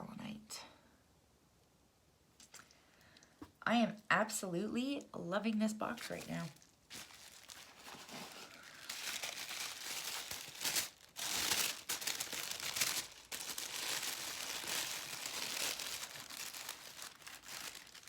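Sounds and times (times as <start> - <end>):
tissue paper crinkling: 6.0 - 18.0.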